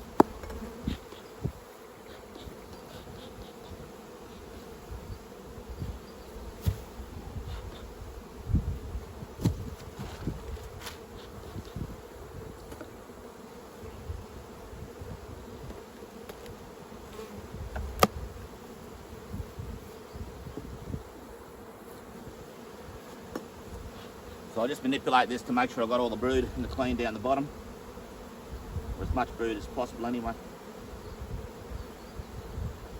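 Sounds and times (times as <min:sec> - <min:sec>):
bees buzzing: 0:00.0 - 0:32.9.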